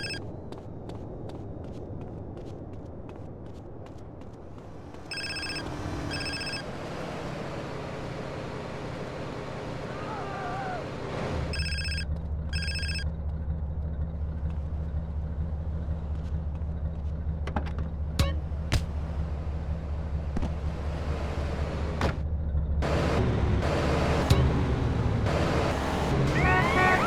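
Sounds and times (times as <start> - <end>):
electronic ringing tones: 0.0 - 0.2, 5.1 - 6.7, 11.5 - 13.1
low hum: 0.0 - 27.0.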